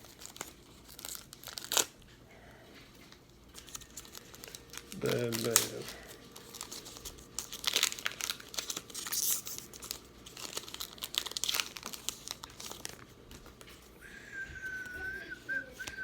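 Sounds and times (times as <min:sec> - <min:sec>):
wrapper tearing and crinkling: 0:00.0 - 0:02.1, 0:03.4 - 0:13.8.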